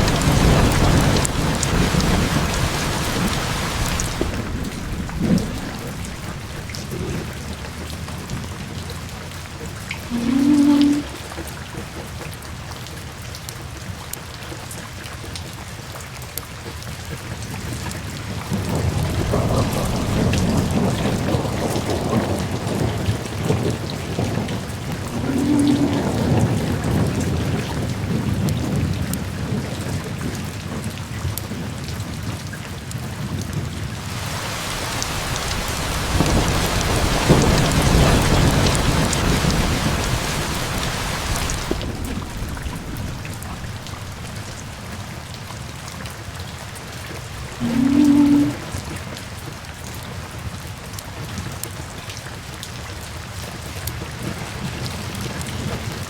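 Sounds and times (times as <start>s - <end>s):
thunder rumbling: 0.0s - 11.6s, 18.3s - 29.1s, 34.0s - 45.9s, 47.2s - 49.0s
rain falling: 0.0s - 56.0s.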